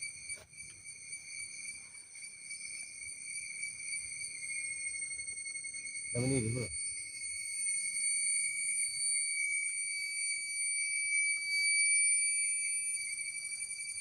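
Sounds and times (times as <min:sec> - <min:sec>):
insects calling: 0:00.0 - 0:10.5.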